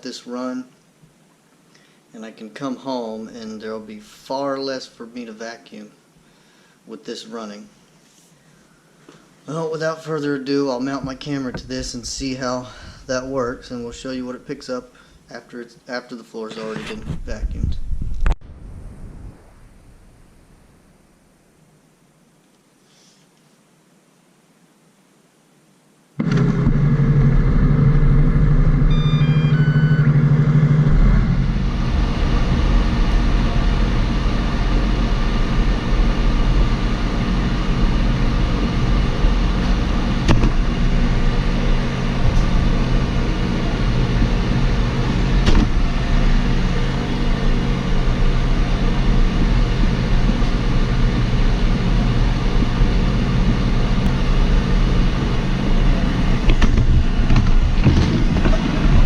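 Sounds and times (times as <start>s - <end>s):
robot vacuum running: 26.2s - 59.0s
short beeping tones: 28.9s - 30.4s
sharp knocks: 40.3s - 40.6s.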